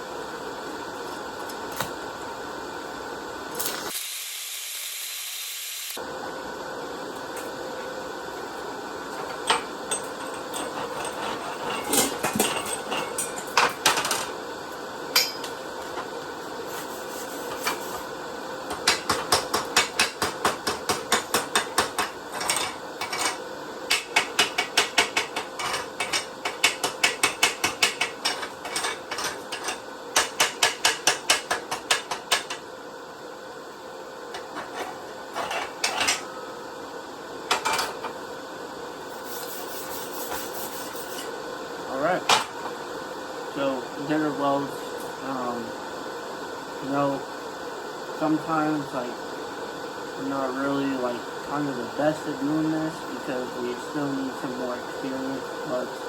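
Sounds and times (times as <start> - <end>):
steady hum: 6.0 - 56.0
hammer striking metal: 15.2 - 15.6.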